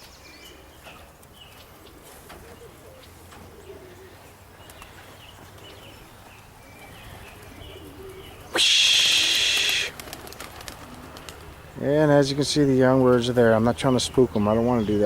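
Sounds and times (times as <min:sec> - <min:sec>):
pigeons cooing softly: 0:00.0 - 0:15.0
loud hissing rush: 0:08.5 - 0:10.0.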